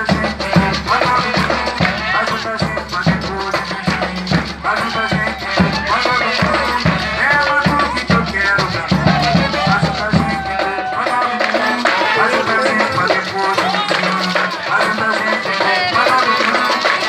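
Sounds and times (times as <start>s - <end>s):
low drum beat: 0.0s - 10.9s
person singing: 0.0s - 17.0s
shaker: 0.0s - 17.0s.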